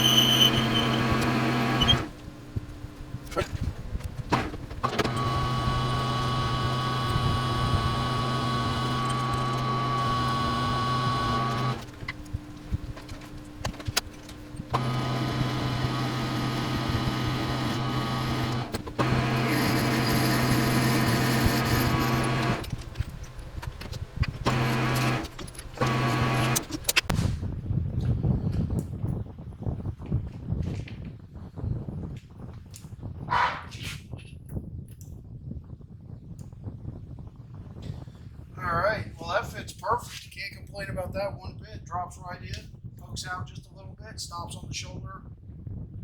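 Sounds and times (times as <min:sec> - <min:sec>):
lathe motor humming: 0:00.0 - 0:27.0.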